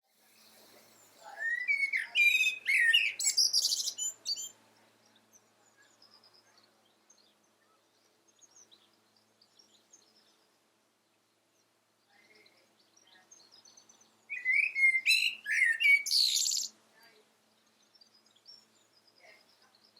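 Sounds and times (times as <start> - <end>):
faint high bird chirps: 0.1 - 10.7, 11.5 - 19.9
blackbird singing: 0.3 - 10.5, 12.1 - 16.8.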